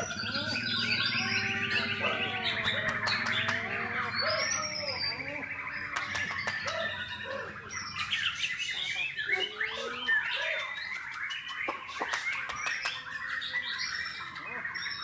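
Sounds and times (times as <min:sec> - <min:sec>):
bird sharp clicks: 0:02.6 - 0:03.6, 0:05.9 - 0:07.0, 0:10.9 - 0:13.3.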